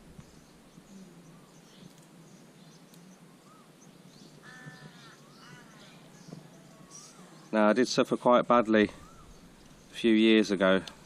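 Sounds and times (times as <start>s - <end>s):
bird chirps: 0.2s - 10.6s
bird cawing: 4.4s - 7.5s, 8.9s - 9.8s.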